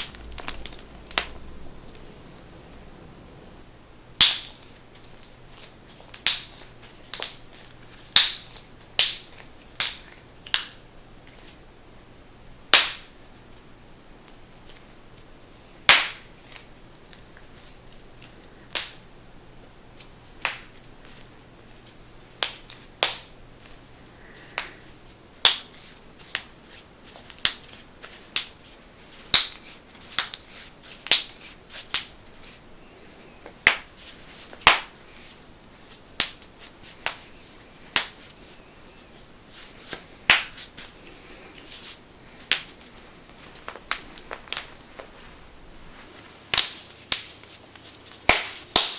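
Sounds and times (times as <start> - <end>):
knuckles cracking: 0.0 - 1.5.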